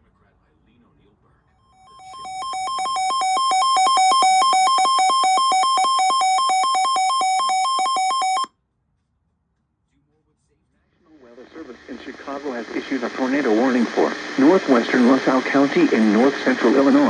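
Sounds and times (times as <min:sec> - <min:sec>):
two-tone electronic alert warble: 0:01.9 - 0:08.5.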